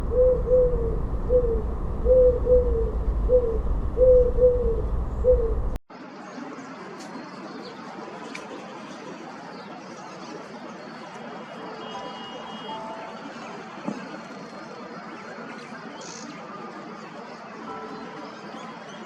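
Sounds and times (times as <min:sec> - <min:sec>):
bird hooting: 0:00.0 - 0:05.8
heavy low rumble: 0:00.0 - 0:05.8.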